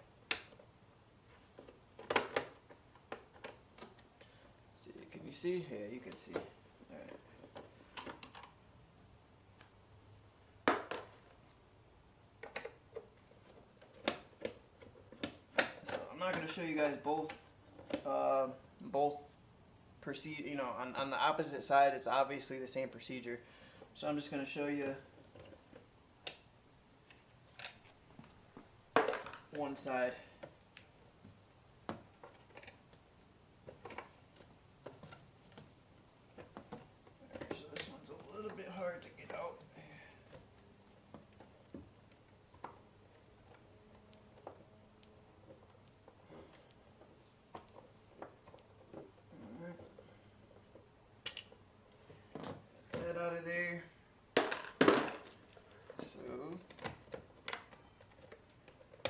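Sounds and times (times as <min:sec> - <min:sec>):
plastic parts clicking and tapping: 0:01.3 - 0:04.3, 0:12.4 - 0:16.6, 0:30.4 - 0:33.0, 0:50.5 - 0:53.2, 0:54.4 - 0:59.0
plastic and metal parts handled: 0:31.8 - 0:39.4, 0:54.4 - 0:59.0.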